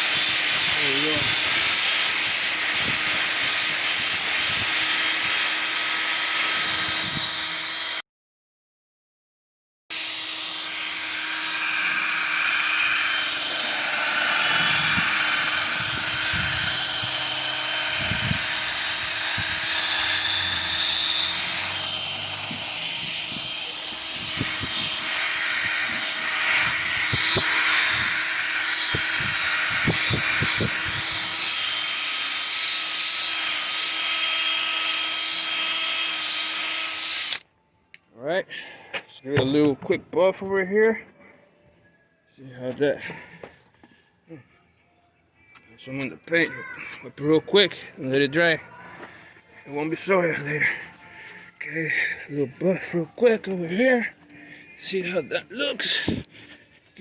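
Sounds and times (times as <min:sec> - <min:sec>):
electric drill motor hum: 0:00.0 - 0:08.0, 0:09.9 - 0:37.4.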